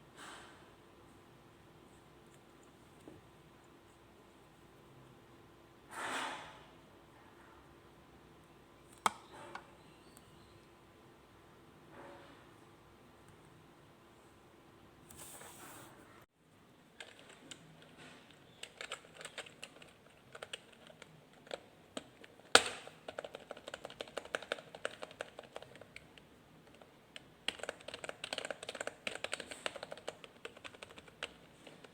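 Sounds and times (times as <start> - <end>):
typing on a keyboard: 16.9 - 31.9.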